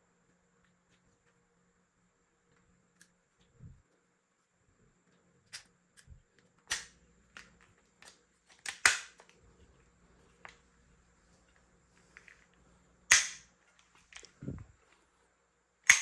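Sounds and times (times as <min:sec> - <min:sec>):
plastic toy pistol clicks and snaps: 0:06.7 - 0:09.4, 0:13.1 - 0:13.5.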